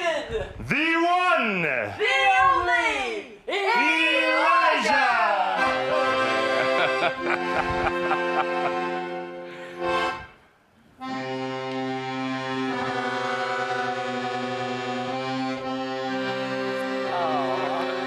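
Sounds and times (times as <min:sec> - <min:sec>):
accordion playing chords: 0:05.6 - 0:18.0.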